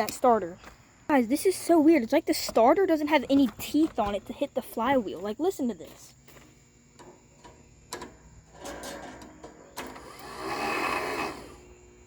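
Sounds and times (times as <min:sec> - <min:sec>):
electric starter motor whirring: 0:06.8 - 0:12.0.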